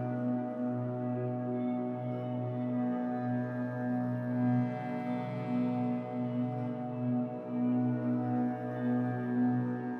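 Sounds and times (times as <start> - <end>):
slow ambient music: 0.0 - 9.9.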